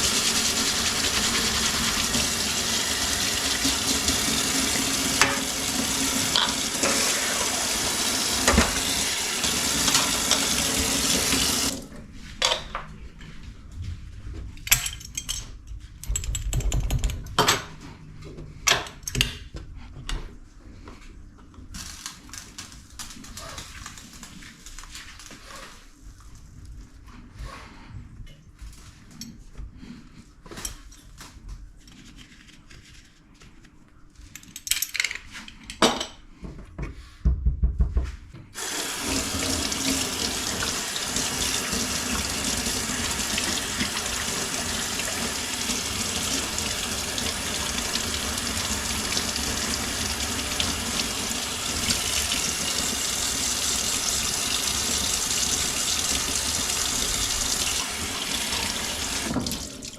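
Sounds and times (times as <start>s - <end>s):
tap running into sink: 0.0s - 11.8s, 54.7s - 59.8s
knocks and clatters: 14.7s - 17.8s.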